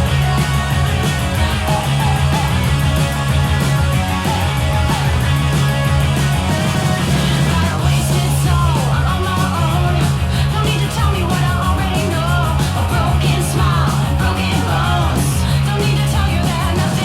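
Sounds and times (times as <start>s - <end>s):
person singing: 0.0s - 3.1s, 6.6s - 17.0s
bass line: 0.0s - 17.0s
rock music: 0.0s - 17.0s.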